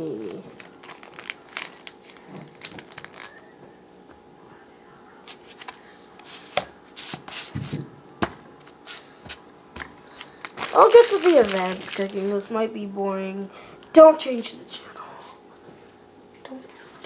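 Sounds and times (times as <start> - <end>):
food packaging rustling: 0.2 - 3.4, 10.1 - 12.5.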